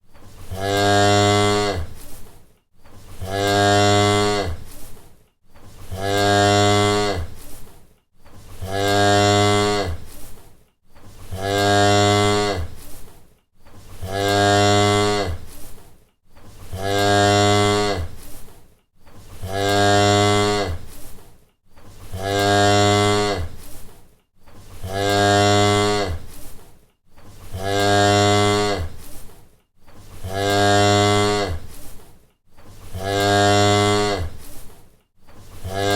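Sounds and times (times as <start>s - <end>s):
cow mooing: 0.4s - 2.2s, 3.2s - 4.9s, 5.9s - 7.6s, 8.6s - 10.2s, 11.3s - 12.8s, 14.0s - 15.7s, 16.6s - 18.4s, 19.4s - 21.0s, 22.1s - 23.7s, 24.8s - 26.4s, 27.5s - 29.1s, 30.2s - 31.8s, 32.9s - 34.6s, 35.6s - 35.9s.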